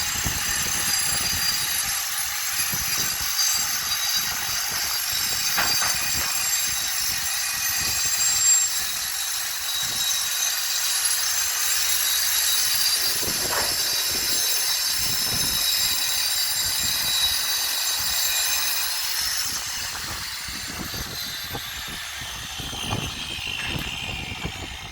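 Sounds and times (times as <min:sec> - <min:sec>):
power tool whining: 0:00.0 - 0:24.9.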